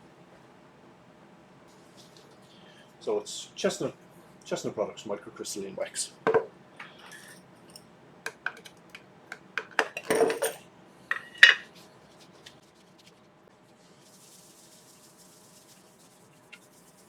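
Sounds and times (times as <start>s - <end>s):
metal tin clinking and knocking: 6.3s - 7.3s, 8.3s - 11.7s
faint soft rubbing: 11.7s - 17.0s.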